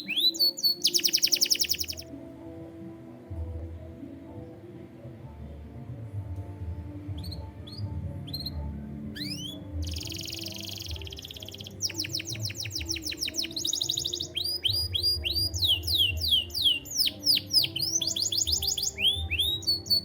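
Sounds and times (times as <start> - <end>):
canary singing: 0.0 - 2.2, 7.0 - 20.0.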